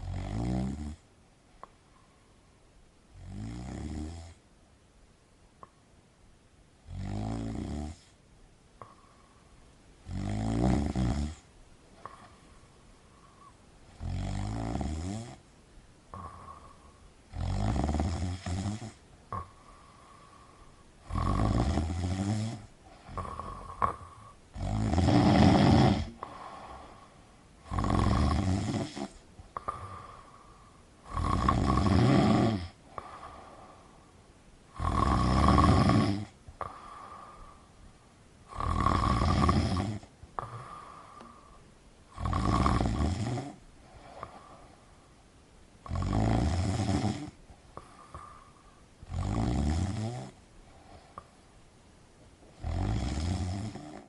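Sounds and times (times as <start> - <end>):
person snoring: 0.0 - 1.0, 6.8 - 8.2, 10.0 - 12.4, 13.2 - 15.4, 16.1 - 34.0, 34.7 - 37.7, 38.5 - 44.7, 45.8 - 51.3, 52.6 - 54.0.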